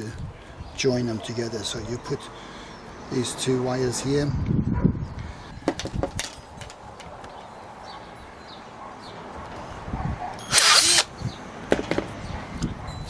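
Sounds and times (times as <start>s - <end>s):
power drill burst: 10.5s - 11.1s.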